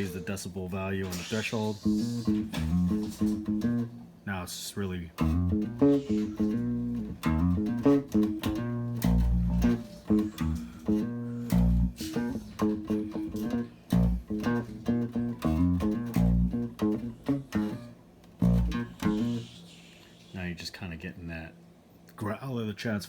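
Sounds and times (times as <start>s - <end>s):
growling guitar and bass music: 1.6s - 4.0s, 5.2s - 19.6s.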